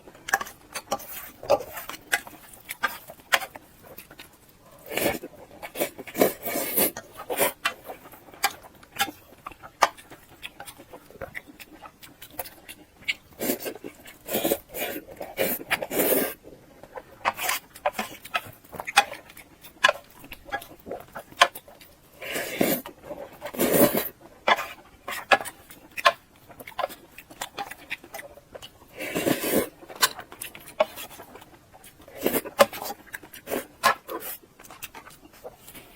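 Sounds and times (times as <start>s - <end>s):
mouth chewing and lip-smacking: 0.1s - 35.9s
wet slurping: 22.2s - 24.1s, 28.9s - 29.8s.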